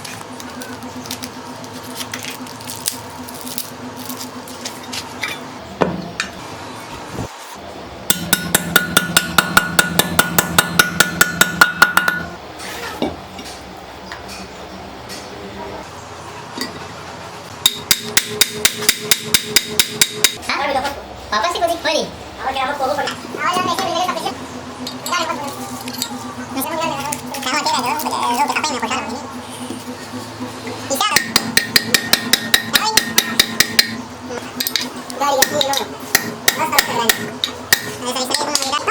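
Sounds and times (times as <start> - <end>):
steady low hum: 0.0 - 38.9
power impact tool hammering: 8.1 - 12.4, 17.6 - 20.4, 31.1 - 34.0, 35.4 - 38.0.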